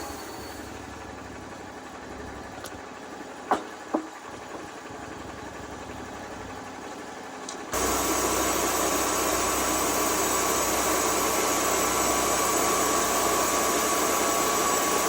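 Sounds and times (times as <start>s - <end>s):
engine idling: 0.0s - 15.0s
sharp knocks: 3.5s - 4.7s.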